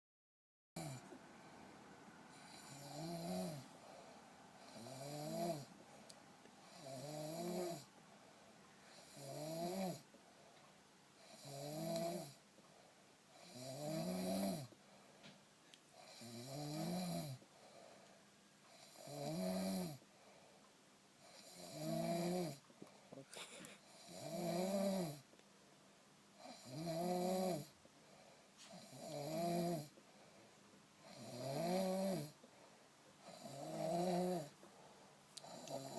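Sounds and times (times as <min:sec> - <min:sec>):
person snoring: 0:00.8 - 0:01.2, 0:02.3 - 0:05.7, 0:06.6 - 0:07.9, 0:08.9 - 0:10.0, 0:11.2 - 0:12.4, 0:13.4 - 0:14.7, 0:16.0 - 0:17.4, 0:18.7 - 0:20.0, 0:21.3 - 0:25.2, 0:26.4 - 0:27.7, 0:28.7 - 0:29.9, 0:31.0 - 0:32.4, 0:33.3 - 0:34.6, 0:35.4 - 0:35.9.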